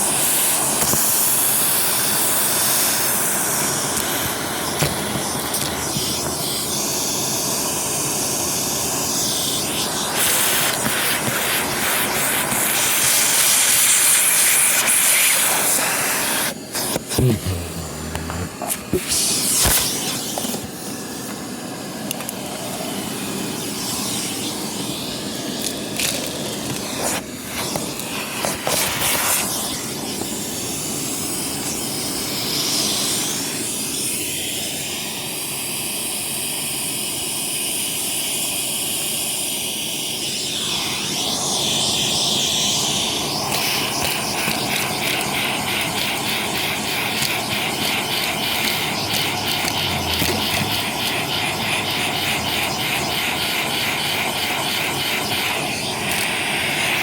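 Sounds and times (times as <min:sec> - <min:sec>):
vacuum cleaner running: 0:00.0 - 0:57.0
grit clicking up vacuum hose: 0:00.2 - 0:02.3, 0:03.2 - 0:06.8, 0:09.1 - 0:21.4, 0:25.5 - 0:30.4, 0:43.3 - 0:57.0.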